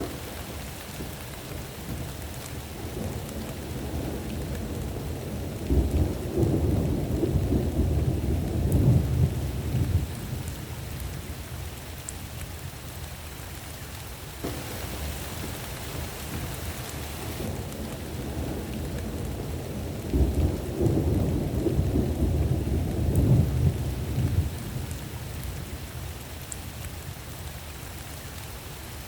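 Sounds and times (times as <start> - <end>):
steady rain: 0.0 - 29.0
thunder rolling: 14.4 - 24.9.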